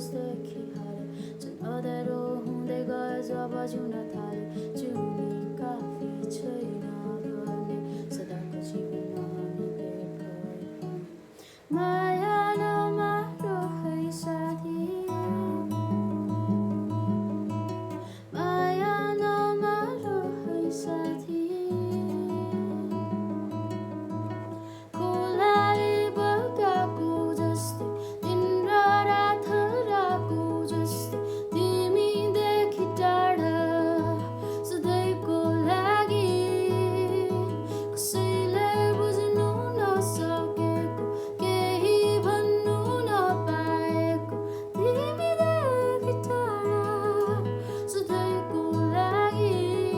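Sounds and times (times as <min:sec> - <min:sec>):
plucked guitar: 0:00.0 - 0:49.9
person singing: 0:18.2 - 0:23.4, 0:24.8 - 0:49.9.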